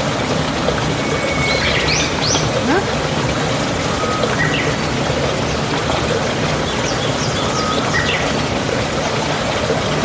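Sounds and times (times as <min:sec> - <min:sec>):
bird chirps and whistles: 0:01.0 - 0:02.5.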